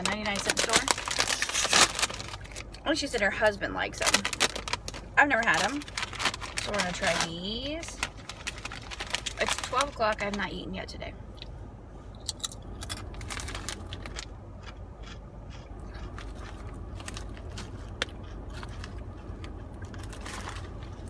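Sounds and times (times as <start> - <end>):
potato chips crunching: 0.0 - 10.4, 12.2 - 21.0
car heater hum: 0.0 - 21.0.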